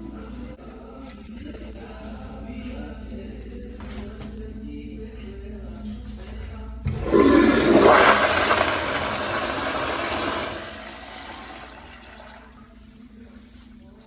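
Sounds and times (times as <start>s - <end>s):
toilet flushing: 6.8s - 14.0s.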